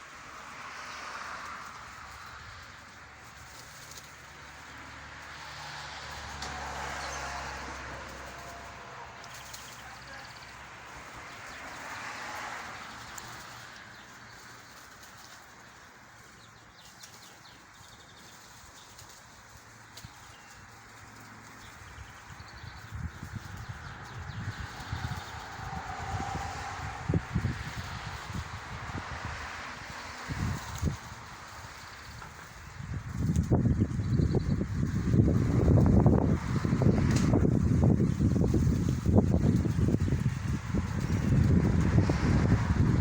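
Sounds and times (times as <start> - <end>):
whirring wingbeats: 0.1 - 43.0
birds calling: 0.7 - 28.4.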